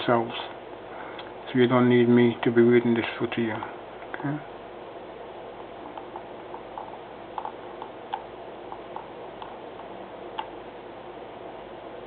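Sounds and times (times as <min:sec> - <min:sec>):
steady background hiss: 0:00.0 - 0:12.0
computer mouse clicks: 0:05.9 - 0:10.5.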